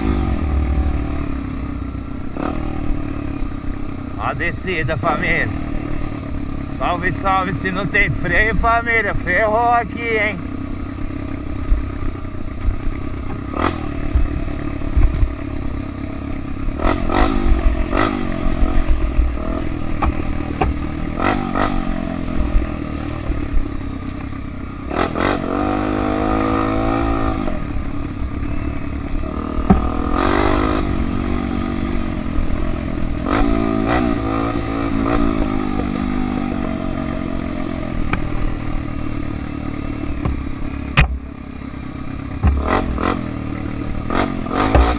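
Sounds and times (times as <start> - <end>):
motorcycle engine revving: 0.0 - 44.9
clattering knocks from motorcycle: 20.0 - 20.9, 29.6 - 30.0, 40.2 - 41.3, 42.4 - 43.0, 44.6 - 44.9.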